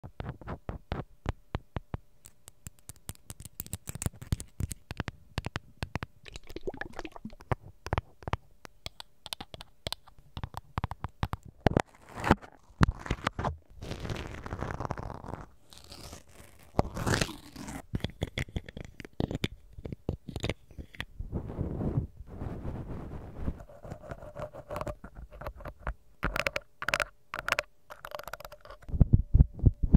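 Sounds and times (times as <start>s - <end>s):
scratching and rubbing: 0.0s - 1.4s, 2.2s - 6.1s, 9.2s - 28.9s
tapping and clicking: 7.2s - 11.8s, 24.0s - 28.9s.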